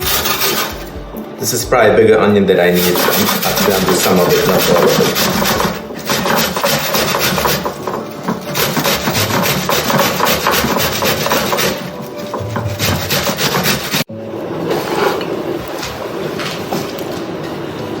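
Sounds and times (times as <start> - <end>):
onion grating on metal grater: 0.0 - 1.0, 2.7 - 14.1
dull rubbing: 0.0 - 1.3, 2.6 - 14.1.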